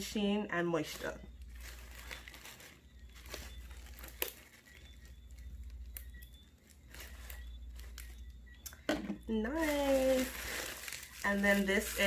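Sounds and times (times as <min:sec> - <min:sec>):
faint low hum: 0:00.0 - 0:12.0
packaging rustling and crinkling: 0:00.8 - 0:08.4, 0:09.4 - 0:12.0.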